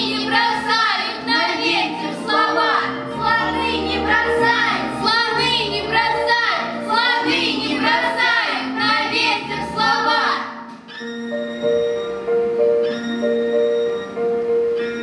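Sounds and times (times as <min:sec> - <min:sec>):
children singing in a group: 0:00.0 - 0:10.5
recorded musical accompaniment: 0:00.0 - 0:15.0.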